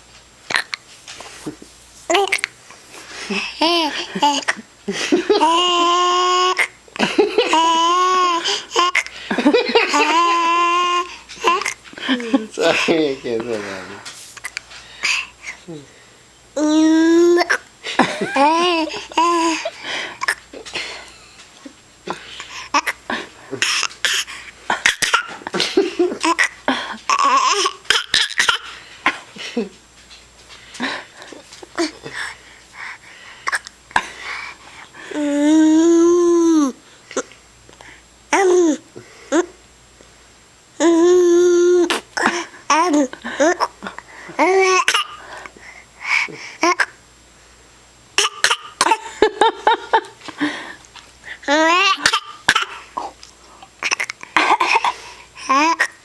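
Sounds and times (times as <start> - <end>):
person hiccuping: 0.5 - 0.8
child laughing: 3.3 - 12.8, 17.3 - 21.2, 24.8 - 28.6
child making held vocal sounds: 16.6 - 17.7, 35.1 - 36.8.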